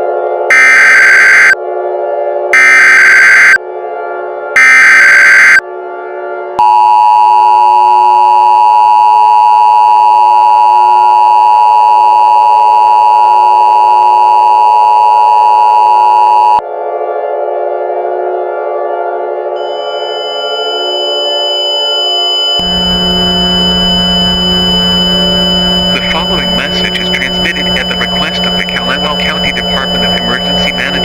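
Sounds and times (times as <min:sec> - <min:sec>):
harsh two-tone attention signal: 0:00.5 - 0:01.6, 0:02.6 - 0:03.6, 0:04.6 - 0:05.6, 0:06.6 - 0:16.6, 0:19.6 - 0:31.0
screeching digital header tones: 0:00.5 - 0:01.6, 0:02.6 - 0:03.6, 0:04.6 - 0:05.6, 0:19.6 - 0:31.0
low synthesized drone: 0:19.7 - 0:31.0.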